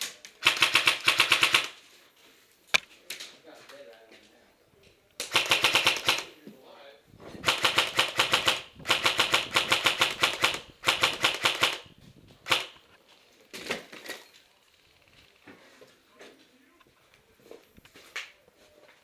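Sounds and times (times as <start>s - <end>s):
airsoft gun firing bursts: 0.4s - 1.8s, 5.2s - 6.3s, 7.4s - 12.8s.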